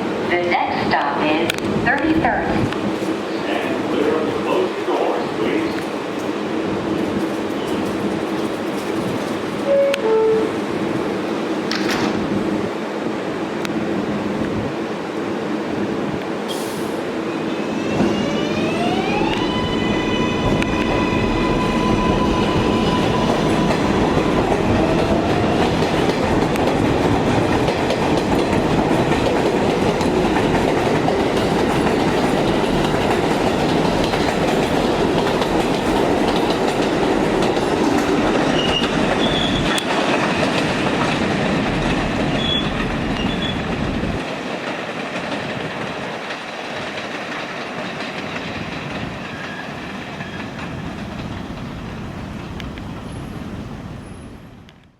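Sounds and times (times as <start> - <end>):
subway train motors whining: 0.0 - 54.9
wheels clattering on rails: 5.7 - 10.0, 11.6 - 12.4, 21.9 - 53.4
high wheel squeals: 38.5 - 39.8, 42.3 - 43.7.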